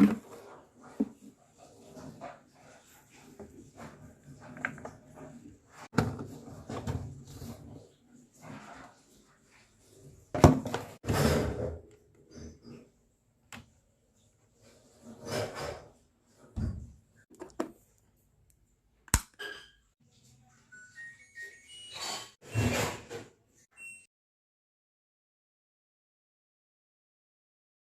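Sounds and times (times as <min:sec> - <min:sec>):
objects thudding and knocking: 0:00.0 - 0:02.5, 0:03.2 - 0:07.8, 0:10.3 - 0:12.8, 0:15.1 - 0:17.8.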